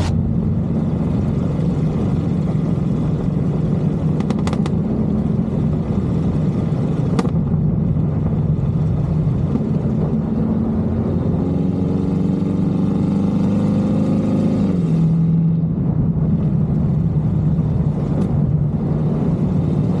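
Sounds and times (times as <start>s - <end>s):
car engine exhaust revving: 0.0s - 20.0s
exhaust pop: 4.1s - 5.0s, 7.0s - 7.7s.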